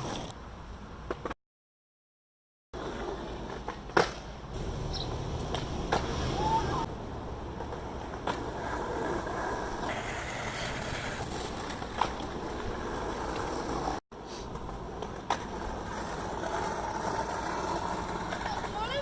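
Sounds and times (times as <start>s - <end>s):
skateboard rolling on pavement: 0.0s - 1.4s, 2.8s - 19.0s
street noise: 0.0s - 1.4s, 2.8s - 19.0s
skateboard clacks: 2.8s - 4.3s, 5.0s - 6.6s, 7.5s - 19.0s.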